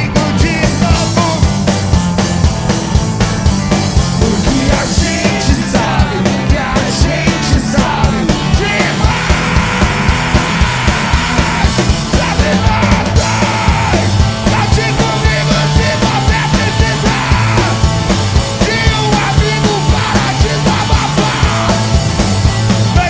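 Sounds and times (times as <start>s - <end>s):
driving drum beat: 0.0s - 23.0s
live rock band playing: 0.0s - 23.0s
shouted vocals: 4.2s - 18.0s, 18.6s - 22.0s.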